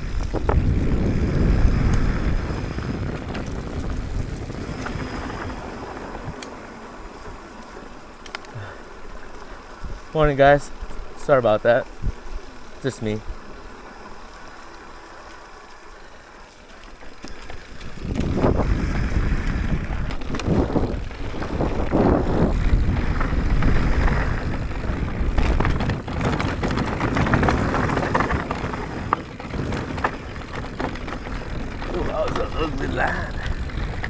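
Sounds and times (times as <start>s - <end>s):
wind on microphone: 0.0s - 6.6s, 17.6s - 34.0s
bike knocking and rattling: 0.0s - 34.0s
bike tyres on dirt and rock: 0.0s - 34.0s.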